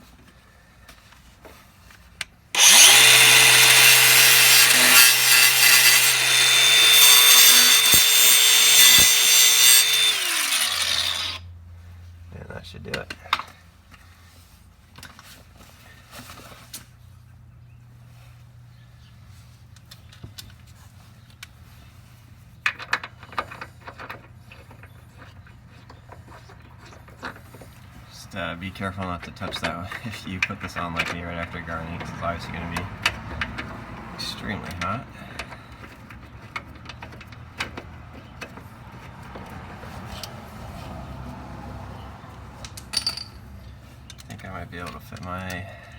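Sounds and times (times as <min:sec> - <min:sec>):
metal tools clinking: 0:42.8 - 0:43.5.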